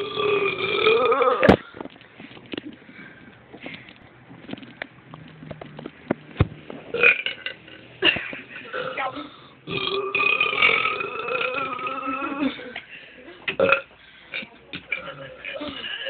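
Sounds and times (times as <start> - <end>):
person belching: 0.0 - 1.6, 6.9 - 7.8, 8.7 - 12.6, 13.6 - 13.9, 14.8 - 16.0.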